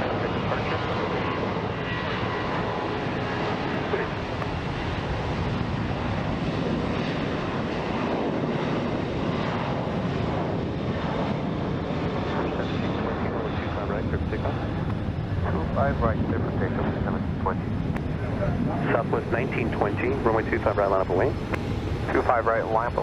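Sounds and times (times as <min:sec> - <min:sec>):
jet engines running: 0:00.0 - 0:23.0.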